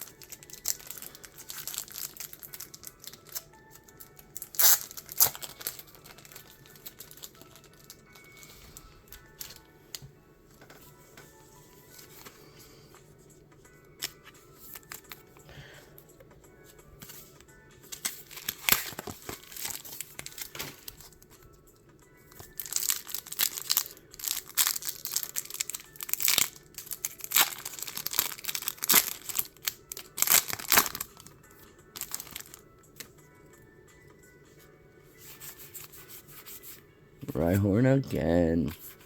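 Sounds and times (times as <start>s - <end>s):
card packaging crinkling and tearing: 0.0s - 9.6s, 17.8s - 21.3s, 22.3s - 33.1s
quiet background music: 0.0s - 39.0s.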